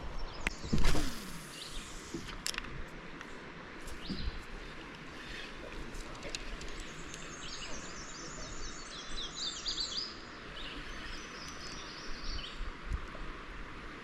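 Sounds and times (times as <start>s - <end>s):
creek water rushing: 0.0s - 14.0s
songbird chirping: 3.9s - 12.6s.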